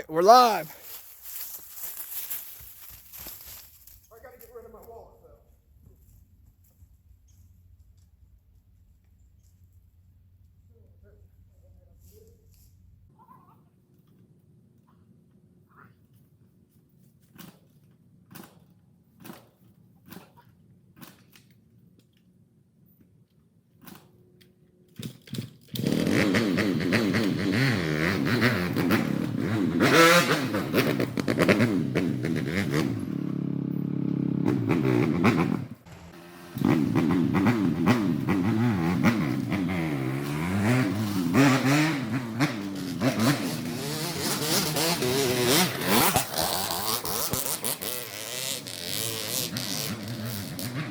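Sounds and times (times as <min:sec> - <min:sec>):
motocross bike engine revving: 0:25.7 - 0:50.9.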